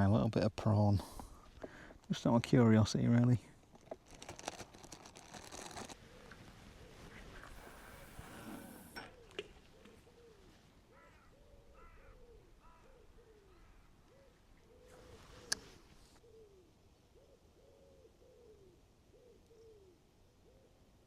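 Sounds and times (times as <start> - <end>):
pigeon cooing: 6.1 - 20.8.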